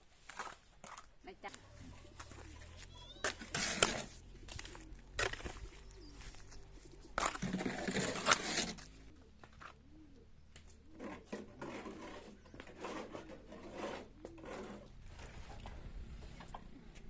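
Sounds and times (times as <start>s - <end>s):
birds cooing: 4.0s - 14.9s.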